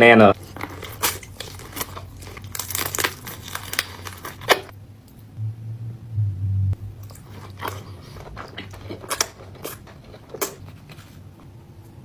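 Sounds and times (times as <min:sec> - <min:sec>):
biting and chewing: 0:00.3 - 0:04.7, 0:07.0 - 0:11.6
sharp food crunches: 0:00.4 - 0:04.7, 0:07.0 - 0:11.1
short low rumble: 0:05.2 - 0:07.3.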